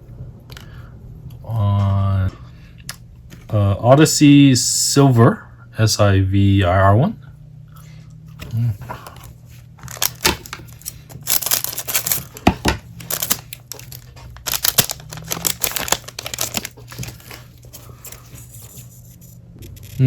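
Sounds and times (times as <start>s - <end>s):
cards and wrapper crinkling: 8.4s - 20.0s.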